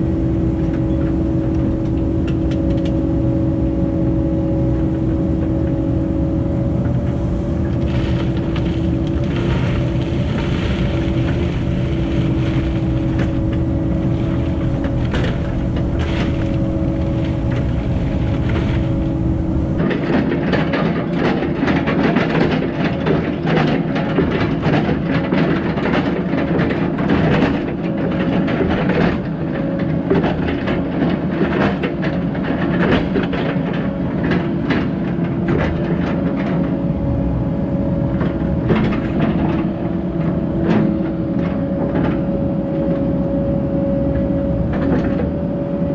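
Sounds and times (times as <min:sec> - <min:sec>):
excavator diesel engine running: 0:00.0 - 0:45.9
bucket knocking and scraping gravel: 0:07.2 - 0:19.3.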